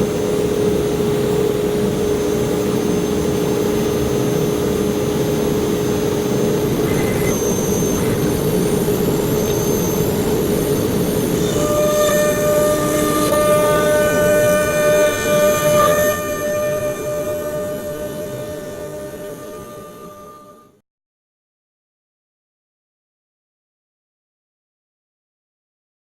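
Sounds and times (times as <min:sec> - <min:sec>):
cnc router machining wood: 0:00.1 - 0:20.8
higher-pitched tone: 0:06.6 - 0:20.8.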